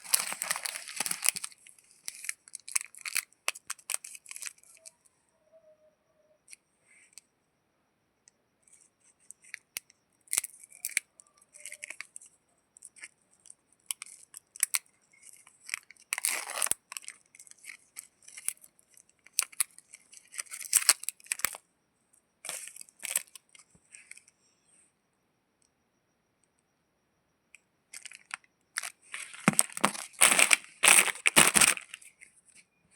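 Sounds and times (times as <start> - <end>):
wrappers tearing and crinkling: 0.0 - 4.8, 14.0 - 18.6, 28.0 - 32.1.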